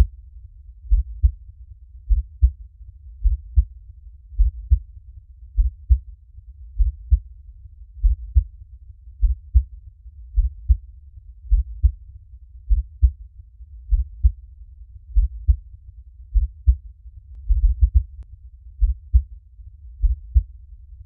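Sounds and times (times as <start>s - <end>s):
faint low rumble: 0.0s - 21.0s
heartbeat thumps: 0.9s - 1.4s, 2.1s - 2.6s, 3.2s - 3.7s, 4.4s - 4.8s, 5.6s - 6.0s, 6.8s - 7.2s, 8.0s - 8.5s, 9.2s - 9.7s, 10.4s - 10.8s, 11.5s - 12.0s, 12.7s - 13.2s, 13.9s - 14.4s, 15.1s - 15.6s, 16.3s - 16.8s, 17.5s - 18.2s, 18.8s - 19.3s, 20.0s - 20.5s.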